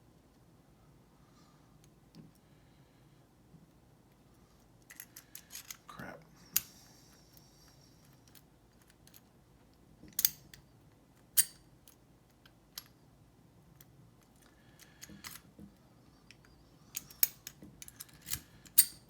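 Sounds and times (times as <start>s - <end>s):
padlock parts clicking and clinking: 4.8s - 5.9s, 10.1s - 12.0s, 16.3s - 19.0s.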